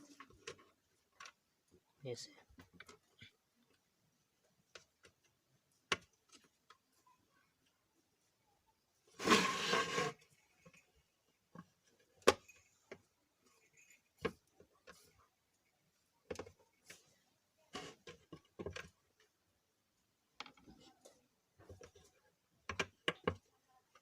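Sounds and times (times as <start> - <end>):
plastic parts clicking and knocking: 0.1 - 1.4, 2.5 - 3.8, 4.6 - 6.8, 16.2 - 16.8, 17.7 - 19.4, 20.3 - 24.0.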